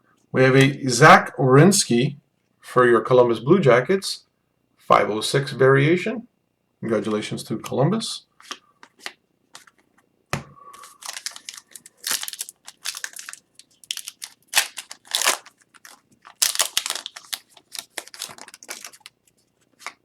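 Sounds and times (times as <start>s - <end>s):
plastic wrappers crinkling and tearing: 10.8s - 20.0s.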